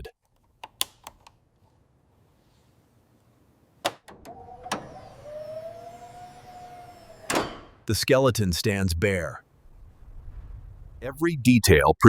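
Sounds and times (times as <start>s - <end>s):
small electric motor whining: 4.1s - 7.8s.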